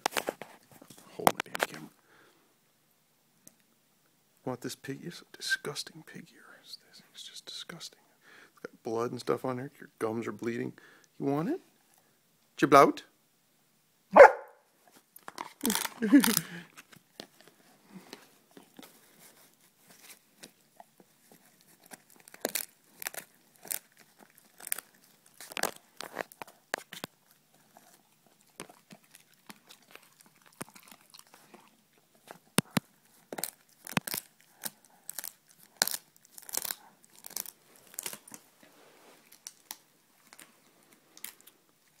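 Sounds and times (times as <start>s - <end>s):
dog chewing with crunches: 14.2s - 42.0s.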